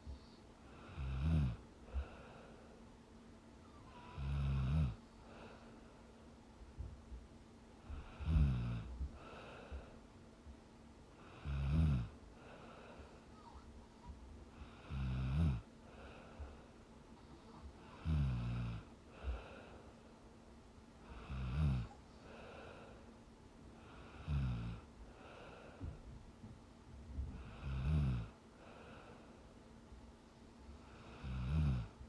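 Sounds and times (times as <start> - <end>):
soft breathing: 0.0 - 32.0
woman snoring: 0.8 - 1.6, 3.7 - 5.0, 7.9 - 8.9, 11.3 - 12.1, 14.6 - 15.7, 17.3 - 18.9, 21.1 - 22.4, 24.1 - 24.9, 27.4 - 28.4, 30.9 - 32.0.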